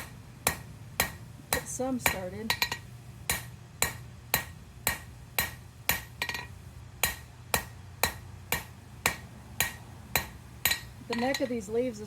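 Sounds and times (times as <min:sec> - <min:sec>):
hammer striking steel on anvil: 0:00.0 - 0:11.6.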